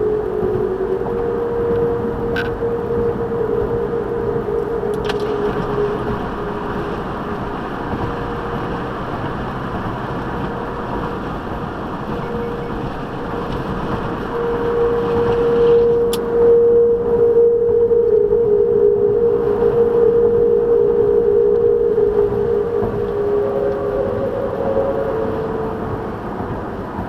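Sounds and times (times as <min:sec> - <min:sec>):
railing humming in wind: 0:00.0 - 0:27.0
rush of wind: 0:00.0 - 0:27.0
traffic noise: 0:00.0 - 0:27.0.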